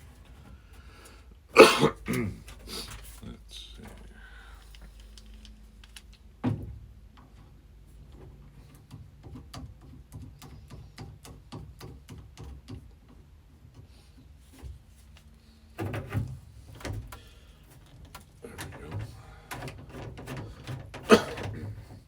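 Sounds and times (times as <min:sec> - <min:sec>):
hand tools clicking and knocking: 0:17.8 - 0:22.0.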